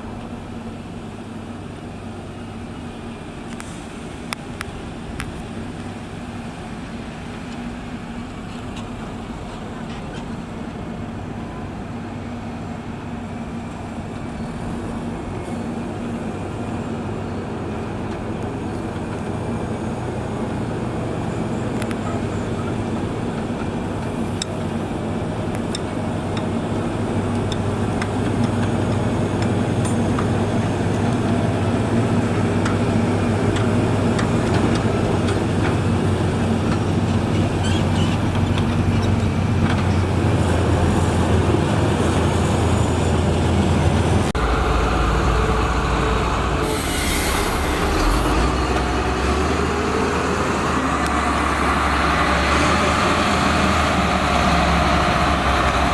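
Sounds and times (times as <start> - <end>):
diesel engine running: 0.0 - 55.9
brief hiss: 46.4 - 49.9.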